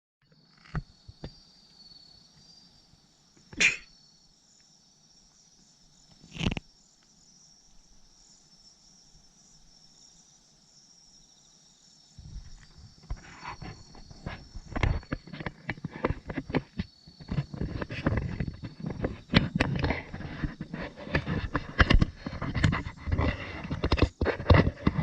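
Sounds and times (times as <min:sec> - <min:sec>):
insects chirping: 0:00.2 - 0:25.0
rustling and clicks: 0:12.3 - 0:25.0.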